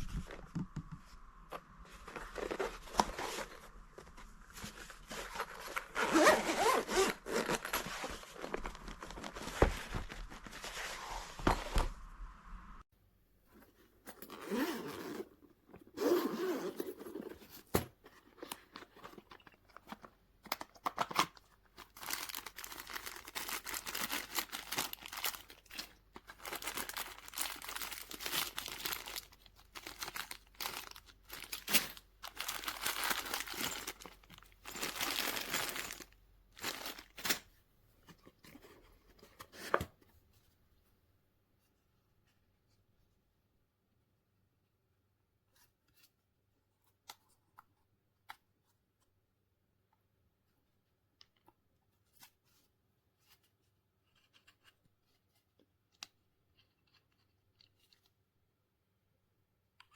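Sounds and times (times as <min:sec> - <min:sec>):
tearing and crinkling: 0:20.5 - 0:37.5.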